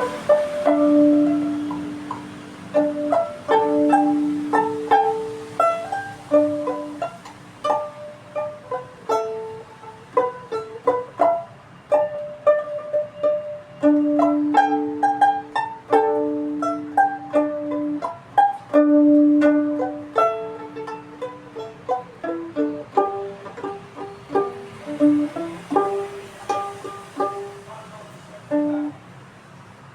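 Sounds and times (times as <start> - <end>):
plucked string instrument melody: 0.0 - 29.0.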